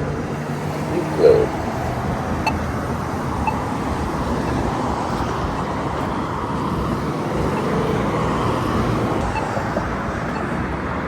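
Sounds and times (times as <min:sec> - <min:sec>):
road traffic passing: 0:00.0 - 0:11.0.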